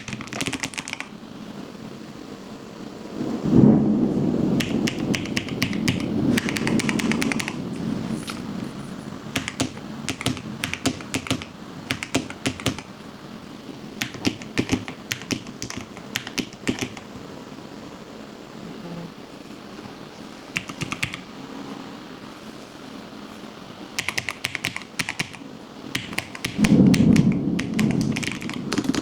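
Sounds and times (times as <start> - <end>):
keyboard key clicks: 0.0 - 1.1, 4.6 - 8.5, 9.3 - 12.9, 14.0 - 17.2, 20.5 - 21.2, 24.0 - 29.0
rain and thunder rumble: 1.0 - 24.1, 24.9 - 29.0.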